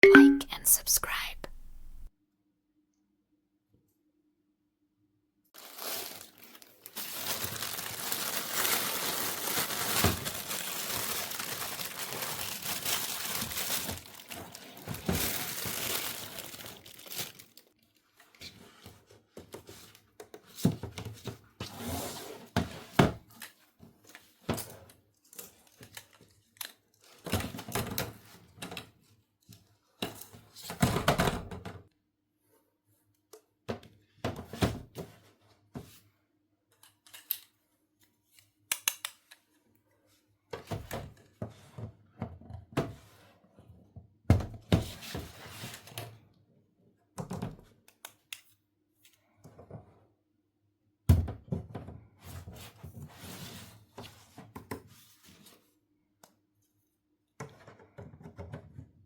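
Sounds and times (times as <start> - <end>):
packaging crinkling and tearing: 5.6 - 17.7.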